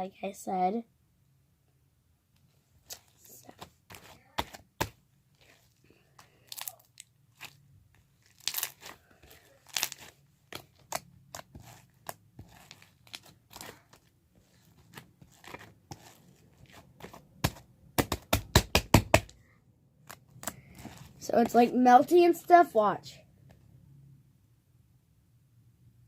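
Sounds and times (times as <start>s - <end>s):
slime squished by hand: 2.8s - 7.6s, 8.2s - 19.3s.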